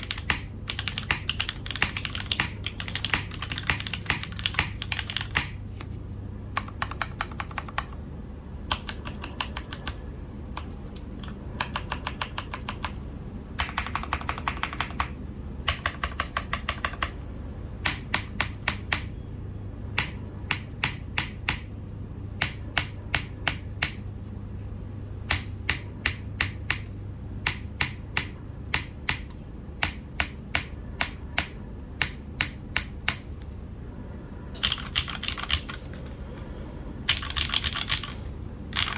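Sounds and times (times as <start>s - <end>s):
mechanical keyboard typing: 0.0s - 5.6s, 6.5s - 8.0s, 8.6s - 13.0s, 13.6s - 17.2s, 34.6s - 36.0s, 37.1s - 38.9s.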